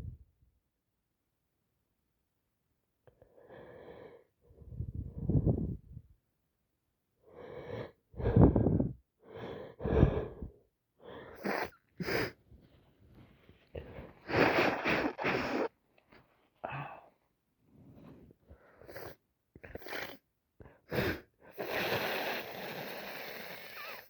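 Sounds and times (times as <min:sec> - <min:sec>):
person sneezing: 0:14.3 - 0:15.7.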